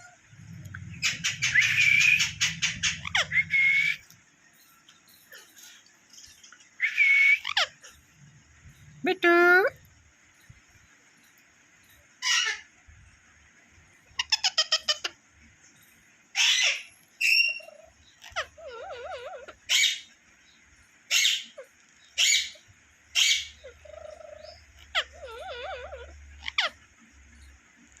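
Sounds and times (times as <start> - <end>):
parrot chirping: 0.0 - 4.2, 5.2 - 10.6, 11.2 - 12.8, 14.0 - 15.2, 16.3 - 20.2, 21.0 - 28.0
parrot screeching: 1.0 - 4.0, 6.8 - 8.0, 12.2 - 12.7, 14.2 - 15.1, 16.4 - 20.1, 21.1 - 21.6, 22.2 - 22.6, 23.2 - 26.8
parrot warbling whistles: 1.0 - 4.0, 6.8 - 7.7.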